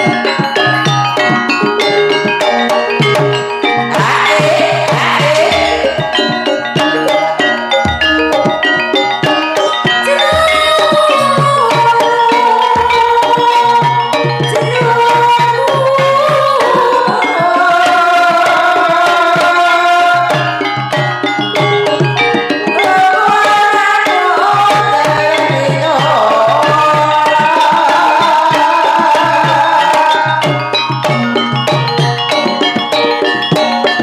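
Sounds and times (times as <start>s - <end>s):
gliding melodic line: 0.0s - 13.2s
metallophone notes: 0.0s - 34.0s.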